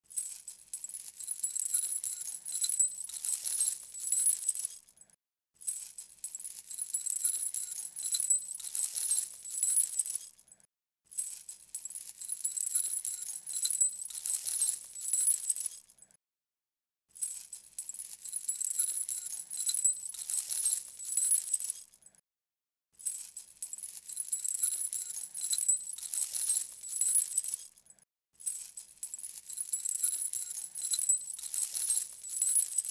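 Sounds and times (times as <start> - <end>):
metal chains rattling: 29.0 - 32.9.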